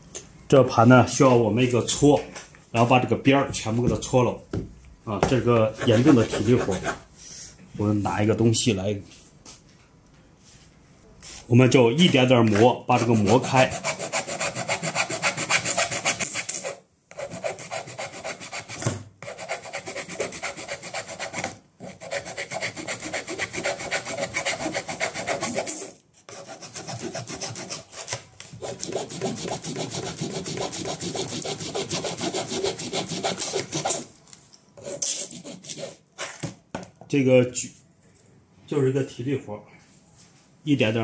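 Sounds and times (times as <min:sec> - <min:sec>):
hand file rasping on metal: 0:13.0 - 0:34.1.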